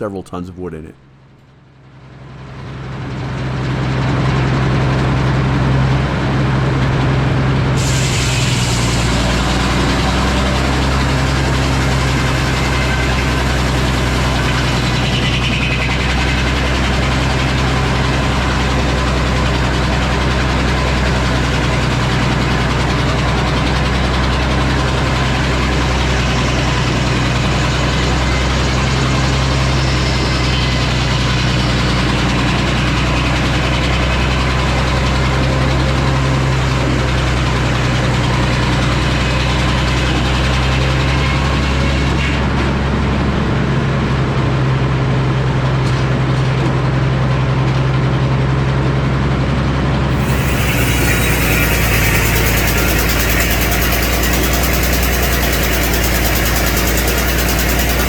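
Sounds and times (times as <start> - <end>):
sawmill engine running: 4.5 - 43.4, 50.1 - 58.0
bright hissing noise: 50.1 - 54.7.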